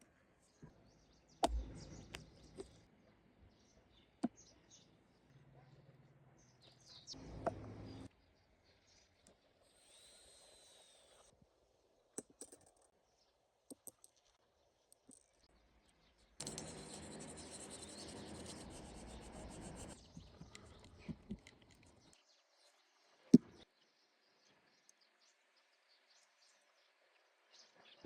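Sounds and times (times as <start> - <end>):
steady rubbing noise: 16.4 - 20.0.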